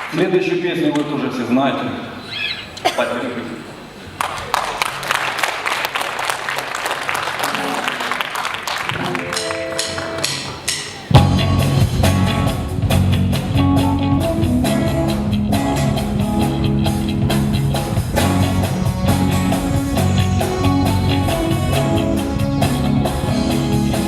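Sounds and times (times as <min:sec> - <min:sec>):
rock band playing: 0:08.9 - 0:24.0.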